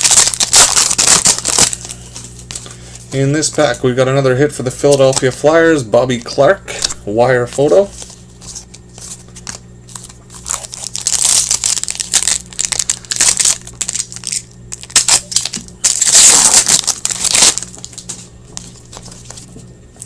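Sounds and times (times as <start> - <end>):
wrapper crinkling and tearing: 0.0 - 2.6, 9.2 - 19.4
steady low hum: 0.0 - 20.0.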